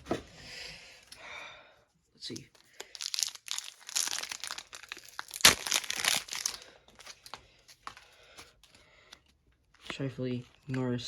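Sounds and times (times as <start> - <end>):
wrapper tearing and crinkling: 2.6 - 7.4.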